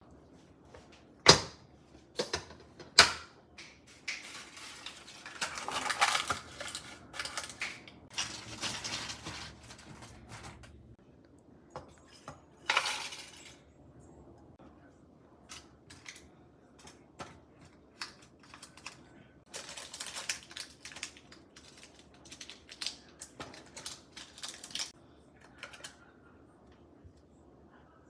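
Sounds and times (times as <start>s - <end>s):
rustling and scraping: 3.9s - 11.0s.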